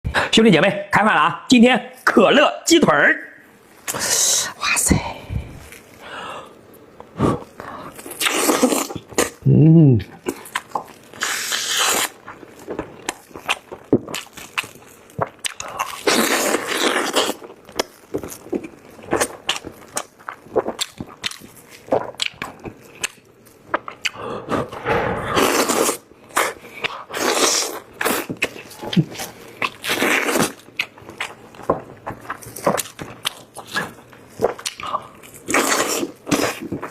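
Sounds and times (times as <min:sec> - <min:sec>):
wet chewing: 0:24.8 - 0:36.9.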